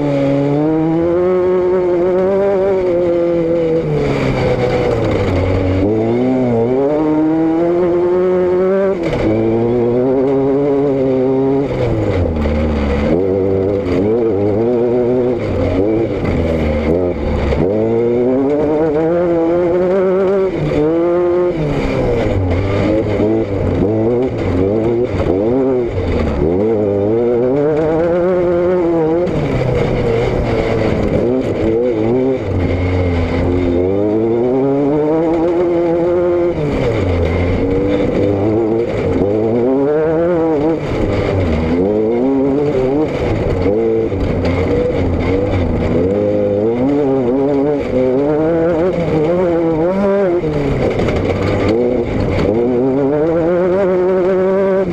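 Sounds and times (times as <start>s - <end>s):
vehicle engine revving: 0.0s - 54.9s.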